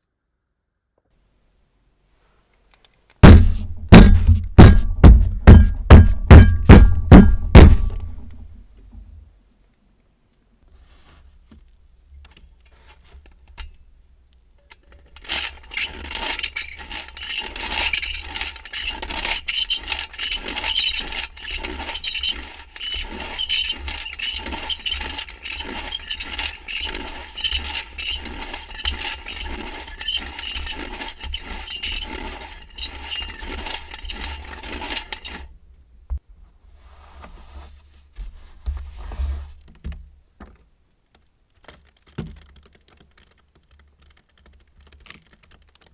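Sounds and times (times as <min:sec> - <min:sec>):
metal tool scraping through sand: 0:15.1 - 0:35.5.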